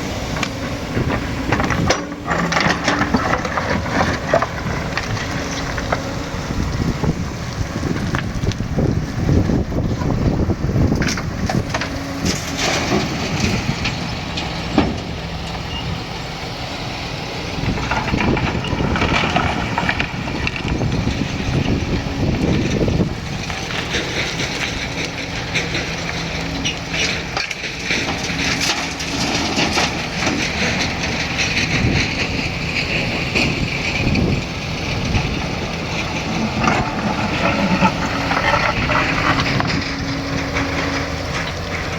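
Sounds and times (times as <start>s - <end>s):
excavator diesel engine: 0.0s - 41.9s
bucket knocking and scraping: 35.0s - 41.9s.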